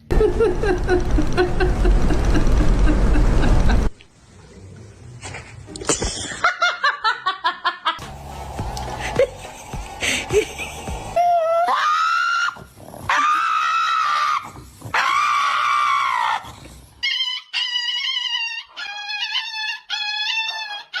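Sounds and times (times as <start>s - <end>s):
dog wailing cries: 11.4s - 21.0s.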